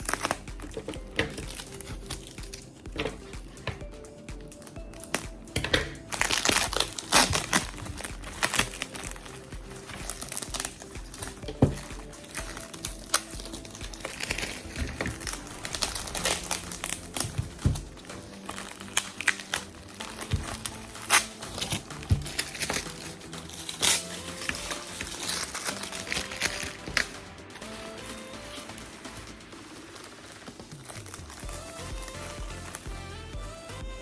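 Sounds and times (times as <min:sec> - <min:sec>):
packaging crinkling: 0:12.2 - 0:27.8.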